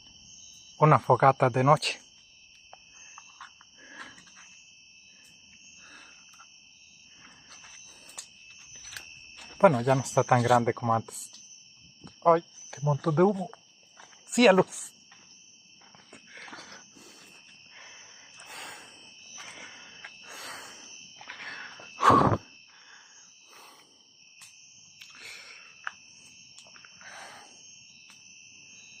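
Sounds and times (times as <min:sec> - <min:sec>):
crickets chirring: 0:00.0 - 0:29.0.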